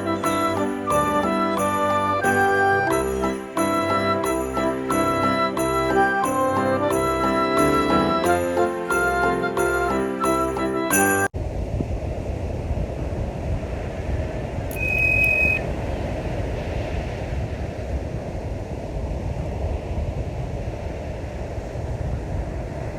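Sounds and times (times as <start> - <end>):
wind buffeting microphone: 11.4 - 22.9
high steady tone: 14.7 - 15.6.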